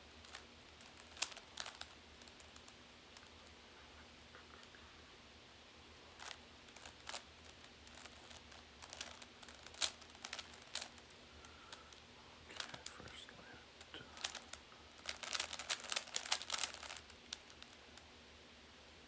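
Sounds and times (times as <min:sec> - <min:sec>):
faint low hum: 0:00.0 - 0:19.0
plastic puzzle cube clicking: 0:00.3 - 0:03.5, 0:06.2 - 0:11.0, 0:14.2 - 0:17.8.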